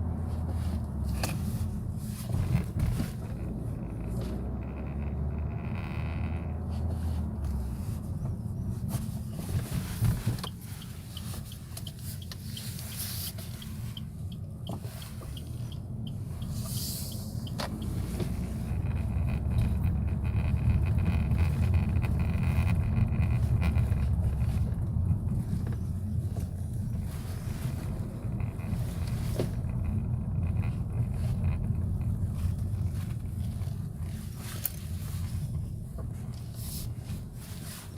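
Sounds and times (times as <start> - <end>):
car engine rumbling: 0.0 - 37.9.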